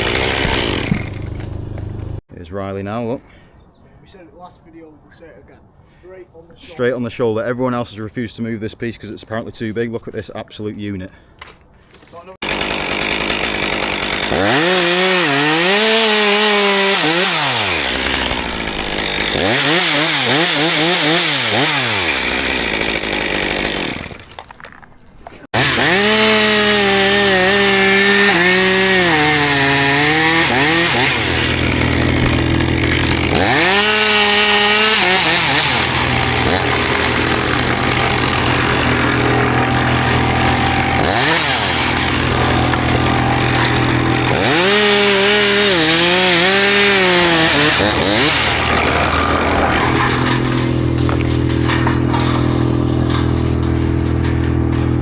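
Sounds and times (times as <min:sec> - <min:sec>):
chainsaw cutting wood: 0:00.0 - 0:02.2, 0:12.4 - 0:24.5, 0:25.5 - 0:55.0.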